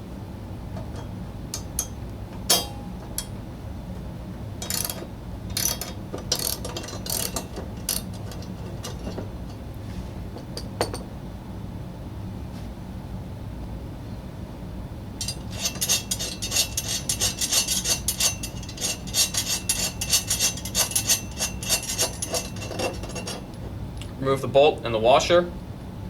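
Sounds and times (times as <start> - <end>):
sharp metal click: 1.0 - 3.4, 4.6 - 9.2
socket wrench ratcheting: 4.6 - 9.3, 15.2 - 23.4.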